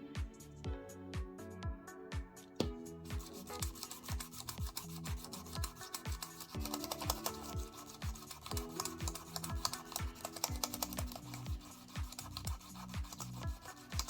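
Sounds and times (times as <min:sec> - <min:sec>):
background music with beat: 0:00.0 - 0:14.0
keyboard keys clicking: 0:03.2 - 0:13.4.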